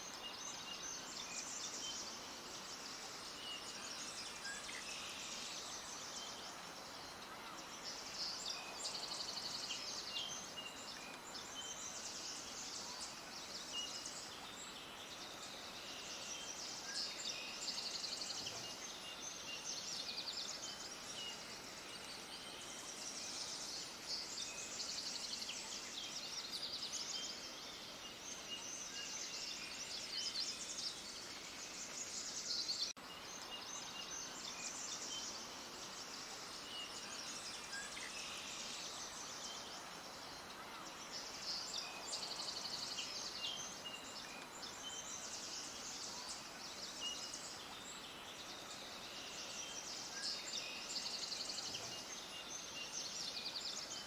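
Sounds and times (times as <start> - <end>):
small birds chirping: 0.0 - 54.0
steady background hiss: 0.0 - 54.0.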